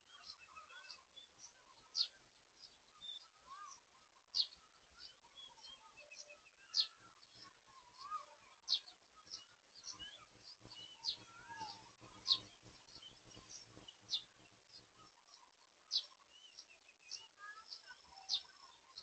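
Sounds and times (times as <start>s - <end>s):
whistled bird notes: 4.4s - 15.3s
sharp high bird chirp: 9.9s - 14.4s.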